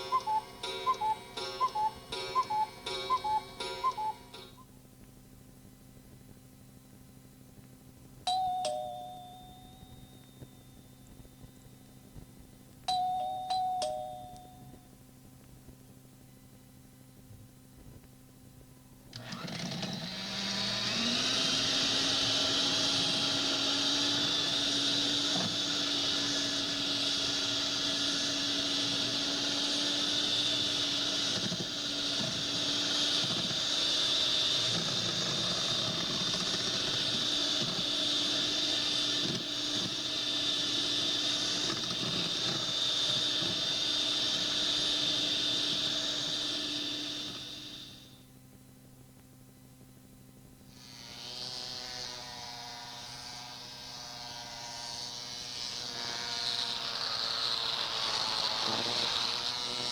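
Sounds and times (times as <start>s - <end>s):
motor winding up with high whine: 0.0s - 4.6s, 19.1s - 48.3s, 50.7s - 59.9s.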